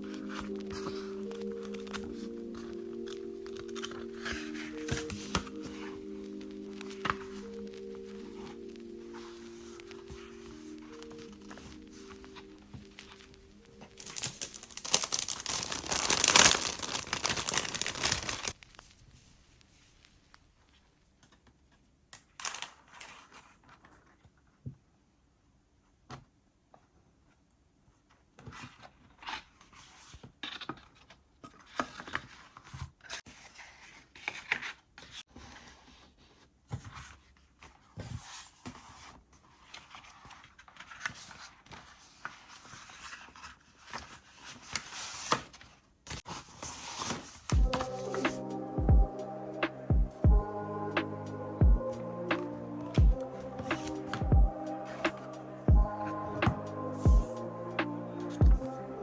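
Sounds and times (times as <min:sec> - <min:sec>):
paper packaging rustling and tearing: 0:00.0 - 0:19.4, 0:22.2 - 0:24.2, 0:36.8 - 0:48.4.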